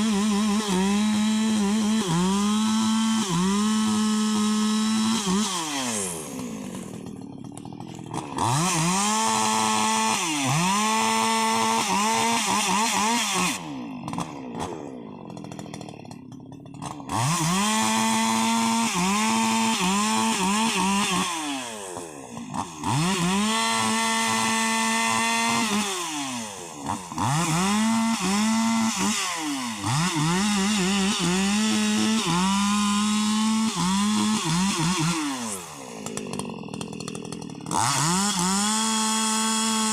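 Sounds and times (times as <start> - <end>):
chainsaw running: 0.0 - 39.9.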